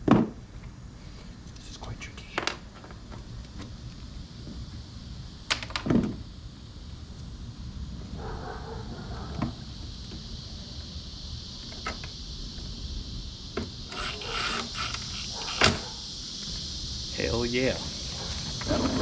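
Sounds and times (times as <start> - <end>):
steady high hiss: 0.0 - 19.0.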